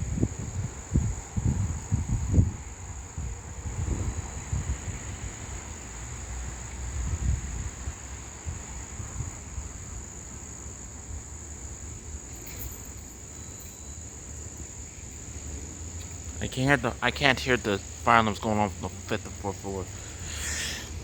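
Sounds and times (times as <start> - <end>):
insects trilling: 0.0 - 21.0.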